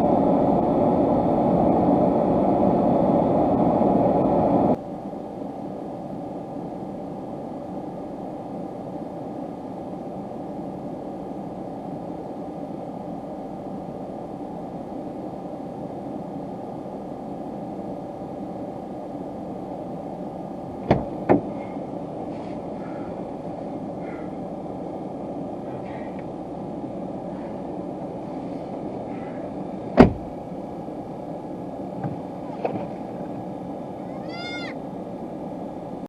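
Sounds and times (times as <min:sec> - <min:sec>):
steady rumbling: 0:00.0 - 0:36.0
faint high-pitched sounds: 0:34.0 - 0:34.8.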